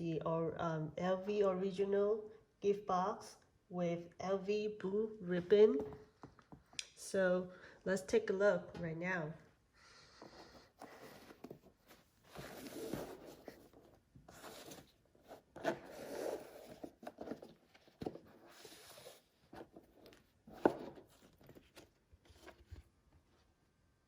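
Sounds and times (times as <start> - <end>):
gift packaging rustling: 10.5 - 22.7.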